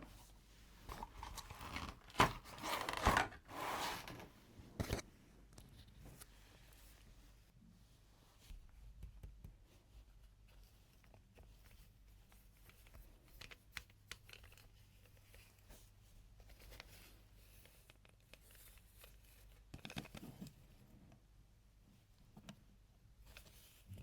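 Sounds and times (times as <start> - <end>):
packaging rustling: 0.9 - 5.0.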